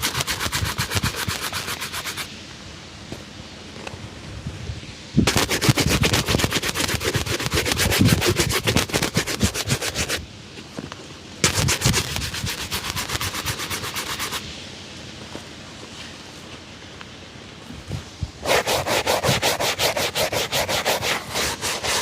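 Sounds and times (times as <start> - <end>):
shoe being buffed: 0.0 - 2.3, 5.3 - 10.2, 11.4 - 14.4, 18.4 - 22.0.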